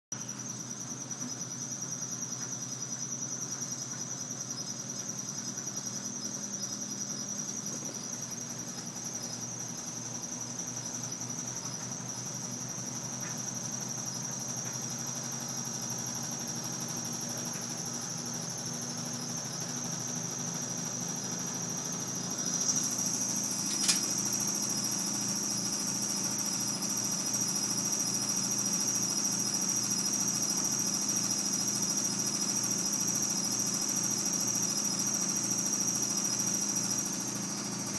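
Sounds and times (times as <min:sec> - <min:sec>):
washing machine hum and whine: 0:00.1 - 0:37.9
sharp click: 0:23.6 - 0:24.3.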